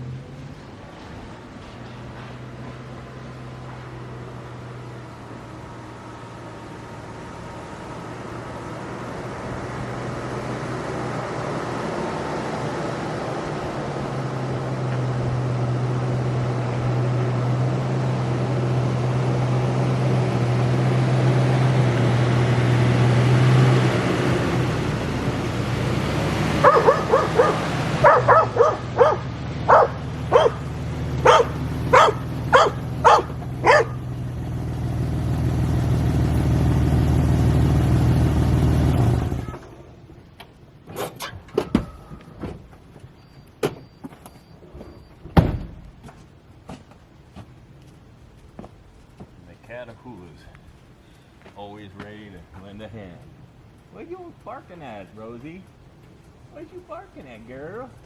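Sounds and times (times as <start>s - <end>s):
vehicle engine running: 0.0s - 40.8s
dog barking: 26.6s - 34.0s.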